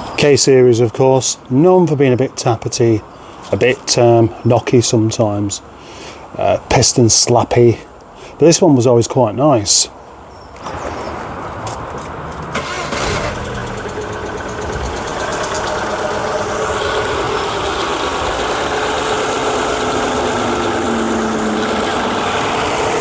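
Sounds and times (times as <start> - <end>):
car engine starting and idling: 10.6 - 23.0.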